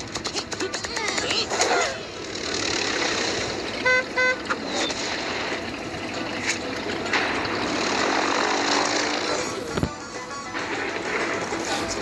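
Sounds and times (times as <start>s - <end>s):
steady background noise: 0.0s - 12.0s
car horn toots: 3.8s - 4.6s.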